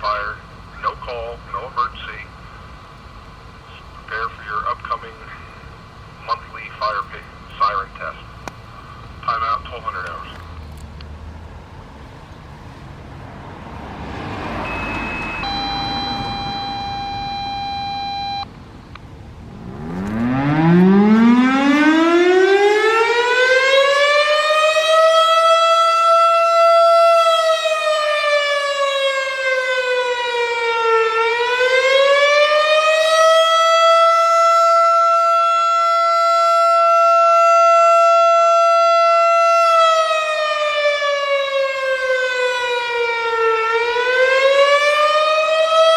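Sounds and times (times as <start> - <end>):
steady lower tone: 14.6 - 22.9
rotating siren winding up: 14.7 - 18.5, 19.6 - 27.1
short high beep: 14.7 - 18.5.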